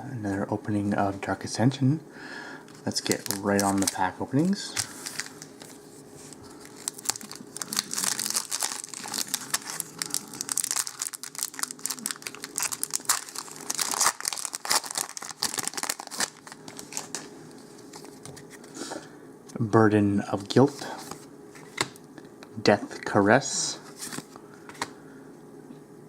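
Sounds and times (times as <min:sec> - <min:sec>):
foil wrapper crinkling and tearing: 0:02.8 - 0:04.1, 0:04.7 - 0:18.2.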